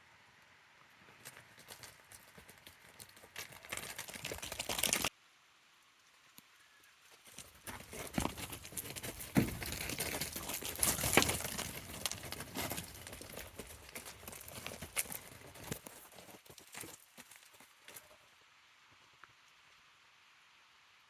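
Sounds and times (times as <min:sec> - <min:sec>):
goat hooves clattering: 0:01.0 - 0:05.1, 0:07.1 - 0:18.2.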